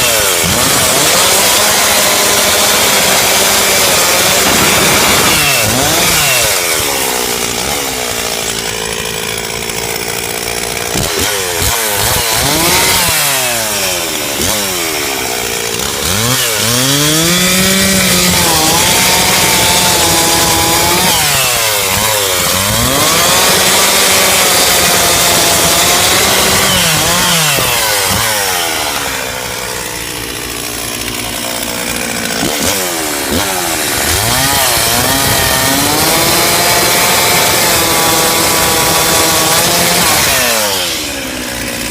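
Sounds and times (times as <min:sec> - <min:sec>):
chainsaw cutting wood: 0:00.0 - 0:41.9.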